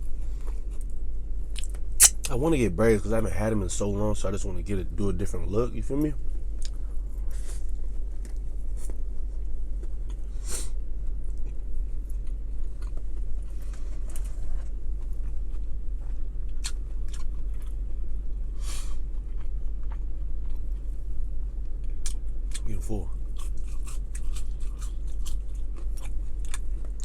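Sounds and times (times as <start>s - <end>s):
steady low hum: 0.0s - 27.0s
close-up chewing and biting: 8.1s - 21.0s, 21.8s - 27.0s
crunchy bites: 11.2s - 18.0s, 21.8s - 27.0s.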